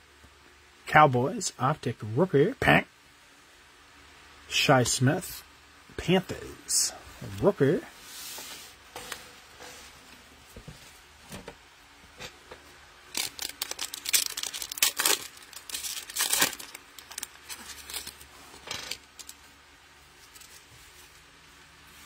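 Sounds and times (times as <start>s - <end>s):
plastic wrapper tearing and crinkling: 13.1s - 19.5s.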